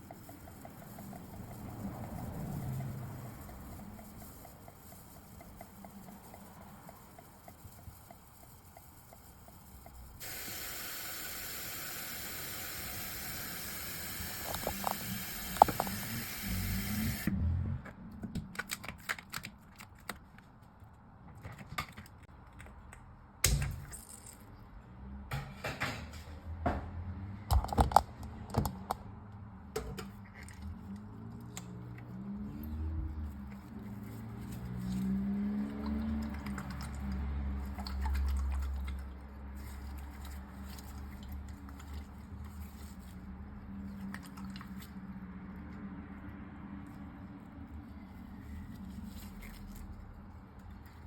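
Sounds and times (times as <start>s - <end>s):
spray hiss: 10.2s - 17.3s
tape crinkling and clicking: 18.4s - 20.8s.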